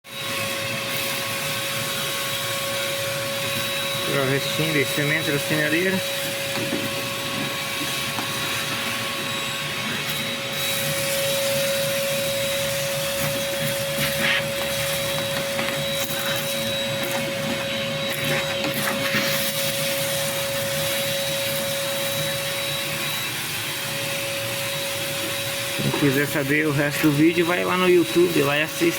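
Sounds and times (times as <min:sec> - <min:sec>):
vacuum cleaner running: 0:00.1 - 0:28.9.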